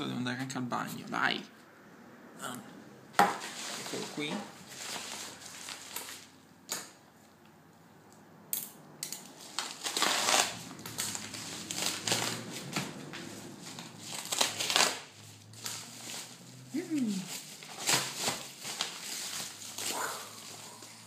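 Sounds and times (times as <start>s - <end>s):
packaging crinkling: 3.4s - 6.4s, 9.4s - 21.0s.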